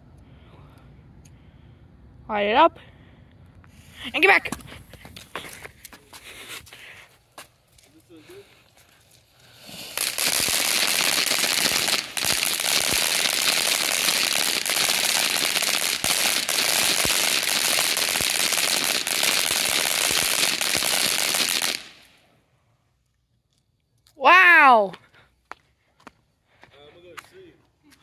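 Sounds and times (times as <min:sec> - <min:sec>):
firecrackers popping: 0:04.1 - 0:22.2.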